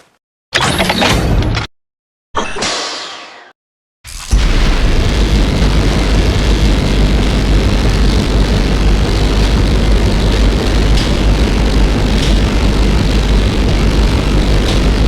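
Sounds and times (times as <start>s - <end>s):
loud engine drone: 4.1s - 15.0s.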